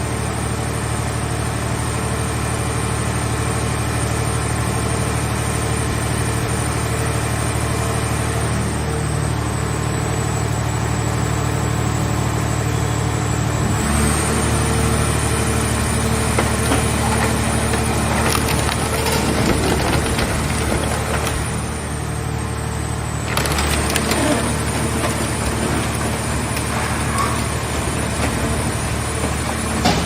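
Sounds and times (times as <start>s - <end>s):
hydraulic power unit humming: 7.5s - 30.0s.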